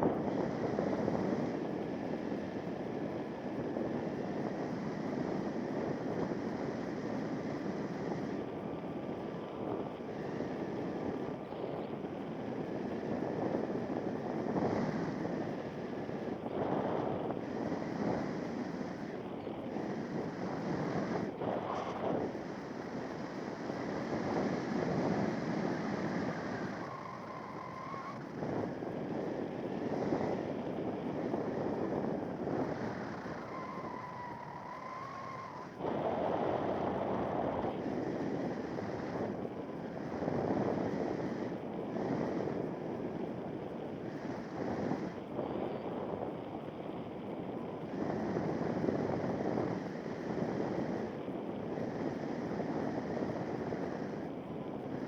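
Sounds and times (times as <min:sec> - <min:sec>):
wind buffeting microphone: 0:00.0 - 0:55.0
faint wavering whistle: 0:26.3 - 0:28.3, 0:32.7 - 0:35.7.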